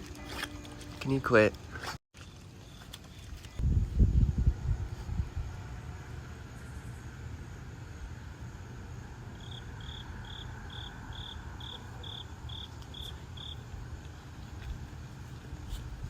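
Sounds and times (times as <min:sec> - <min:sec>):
steady low rumble: 0:03.6 - 0:09.3.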